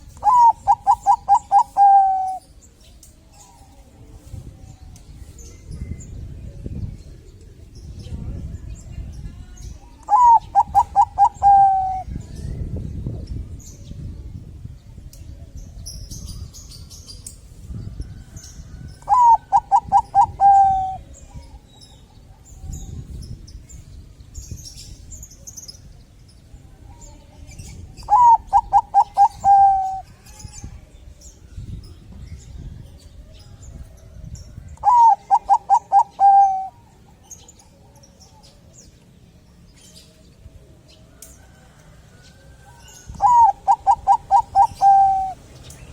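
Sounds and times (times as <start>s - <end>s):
dove cooing: 0.0s - 2.5s, 10.0s - 12.2s, 19.0s - 21.1s, 28.1s - 30.1s, 34.8s - 36.9s, 43.2s - 45.4s
small birds chirping: 0.0s - 45.9s.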